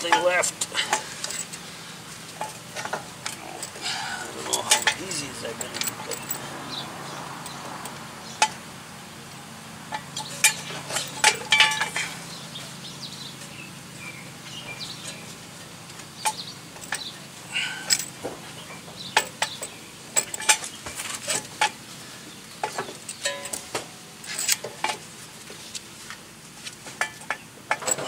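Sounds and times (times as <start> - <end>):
metal tool clicking and clinking: 4.4 - 6.4, 10.2 - 12.1, 23.1 - 24.7.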